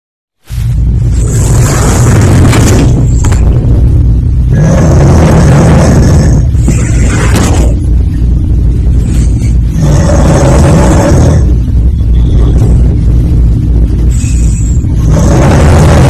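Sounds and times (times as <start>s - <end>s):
person snoring loudly: 1.1s - 2.9s, 4.5s - 7.8s, 9.2s - 11.6s, 14.1s - 16.0s.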